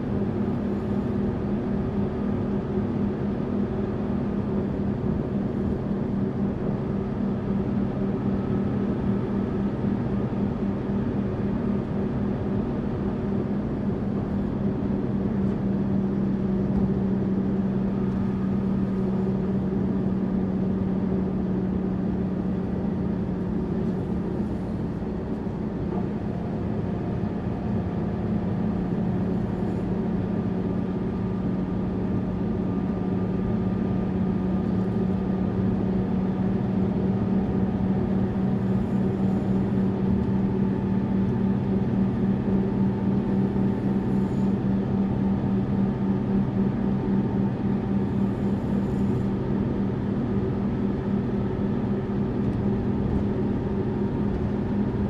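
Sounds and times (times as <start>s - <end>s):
bus engine drone: 0.0s - 55.0s
road noise: 0.0s - 55.0s.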